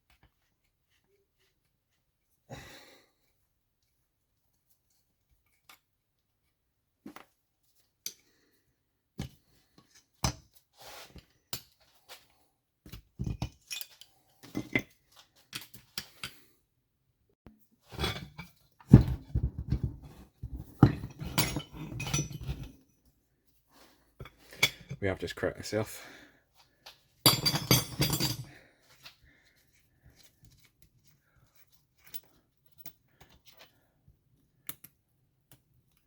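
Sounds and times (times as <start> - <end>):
hand tools clanking on metal: 20.8 - 22.7, 27.3 - 28.6.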